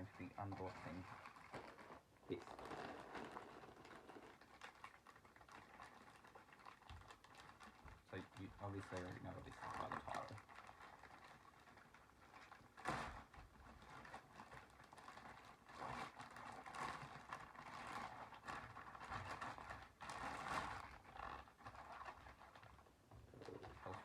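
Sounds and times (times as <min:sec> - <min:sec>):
packaging rustling and scraping: 0:00.0 - 0:24.0.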